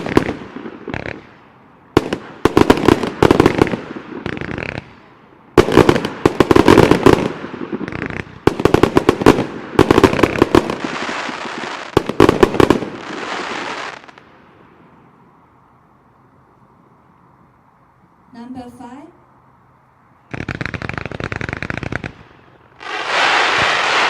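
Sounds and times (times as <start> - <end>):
fireworks bangs: 0.0 - 14.2, 20.2 - 24.0
fireworks crackling: 0.0 - 15.3, 20.2 - 24.0.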